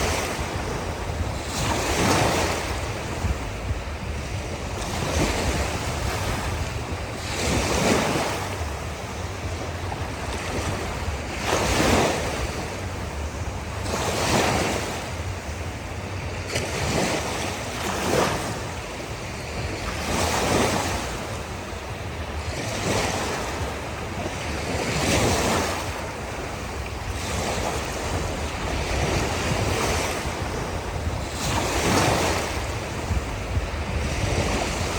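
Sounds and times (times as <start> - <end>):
waves washing on a beach: 0.0 - 34.9.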